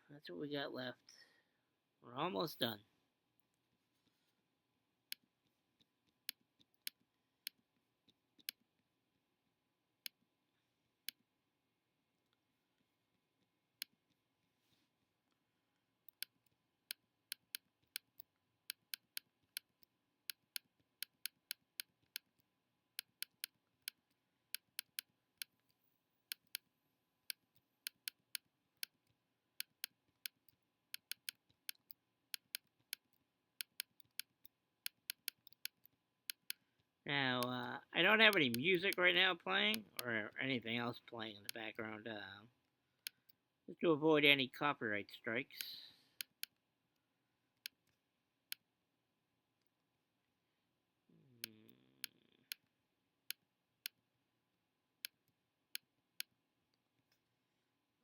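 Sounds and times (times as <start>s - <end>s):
computer mouse clicking: 16.1s - 26.7s, 27.3s - 36.6s.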